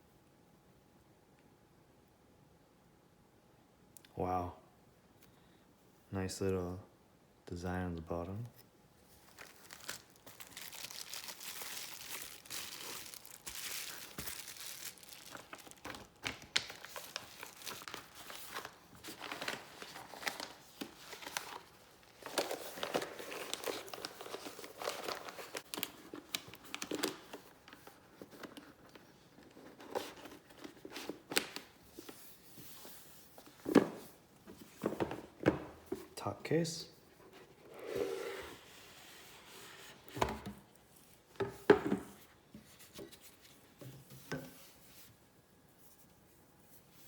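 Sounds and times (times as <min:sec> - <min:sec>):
plastic wrap crinkling: 0:09.1 - 0:28.8.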